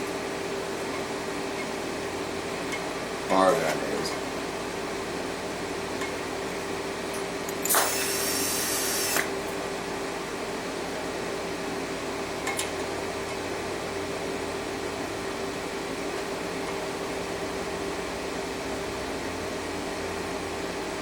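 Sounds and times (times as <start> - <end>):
steady hum: 0.0 - 12.4
gas hissing from a line: 7.5 - 9.3.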